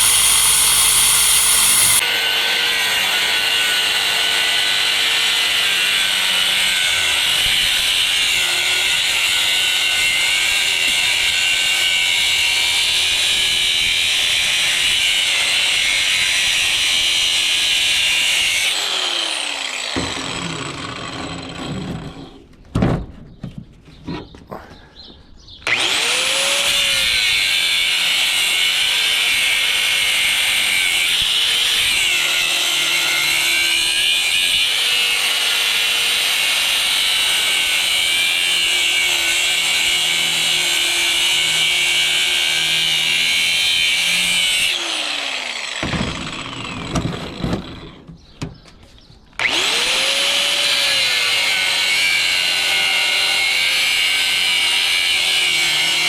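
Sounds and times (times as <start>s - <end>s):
power tool cutting steel: 0.0s - 22.4s, 25.6s - 48.1s, 49.4s - 56.0s
knocks and rattles: 20.0s - 24.5s, 45.8s - 48.9s.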